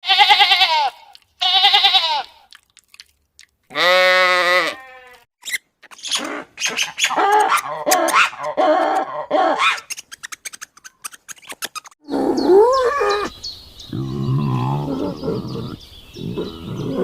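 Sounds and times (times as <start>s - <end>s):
low deep animal call: 12.0s - 17.0s.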